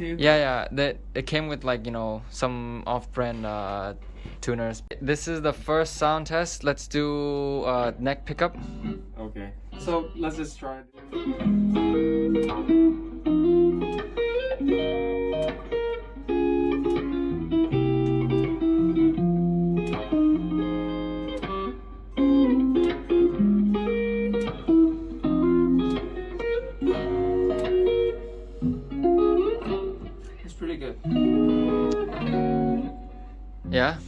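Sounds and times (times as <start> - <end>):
electric guitar notes and chords: 8.5 - 9.2, 11.0 - 34.0.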